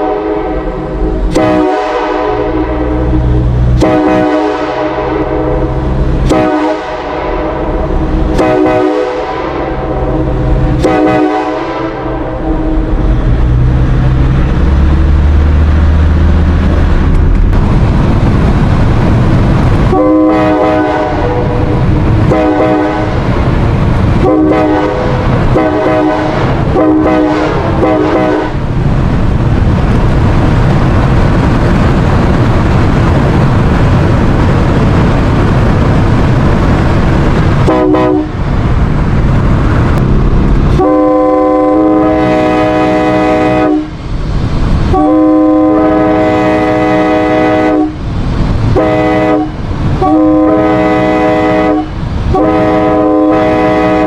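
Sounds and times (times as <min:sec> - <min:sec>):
train horn blasts: 0:00.0 - 0:13.5, 0:19.9 - 0:23.4, 0:24.2 - 0:28.7, 0:37.6 - 0:38.4, 0:40.7 - 0:44.0, 0:44.9 - 0:48.0, 0:48.7 - 0:54.0
loud steady rumble: 0:00.0 - 0:54.0.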